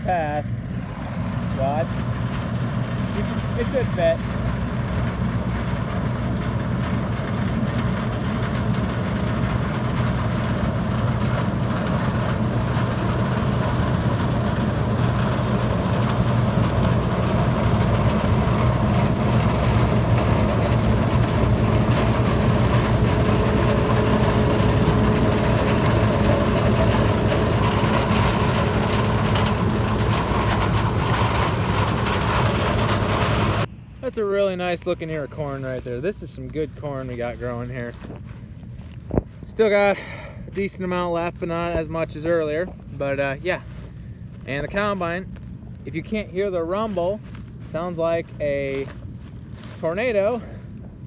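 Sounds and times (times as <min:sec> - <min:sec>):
combine harvester engine rumble: 0:00.0 - 0:51.0
machinery whirring: 0:00.7 - 0:33.7.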